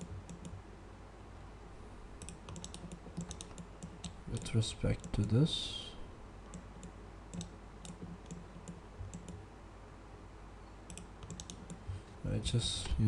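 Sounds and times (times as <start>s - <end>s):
computer mouse clicks: 0.0s - 0.6s, 2.2s - 5.2s, 6.5s - 9.4s, 10.9s - 12.0s
low steady hum: 0.0s - 13.0s.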